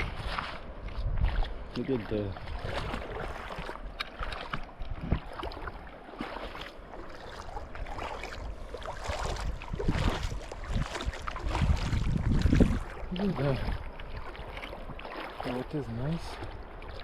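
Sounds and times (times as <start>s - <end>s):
river water splashing: 0.0s - 17.0s.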